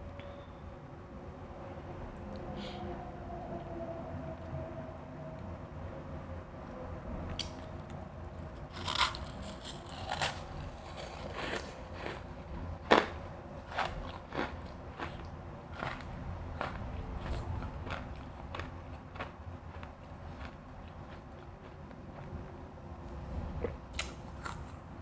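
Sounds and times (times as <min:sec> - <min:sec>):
crushed ice being crunched: 0:08.7 - 0:12.2.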